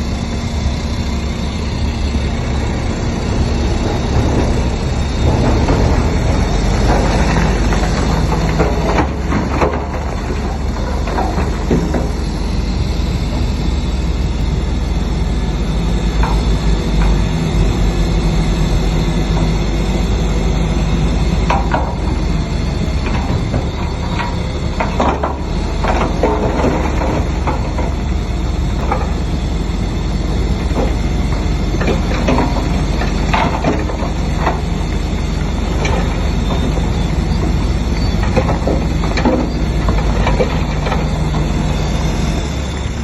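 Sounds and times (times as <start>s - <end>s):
diesel machinery running: 0.0s - 43.0s
metal and rock clanking: 3.4s - 29.2s.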